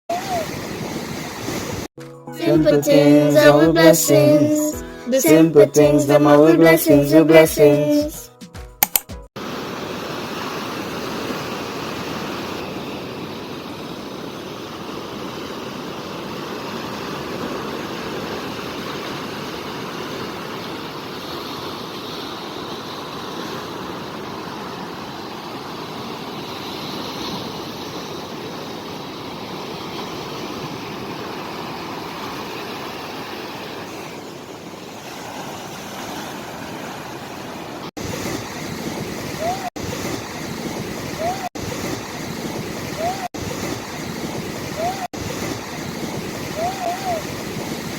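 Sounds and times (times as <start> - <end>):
water rushing: 30.1 - 47.9.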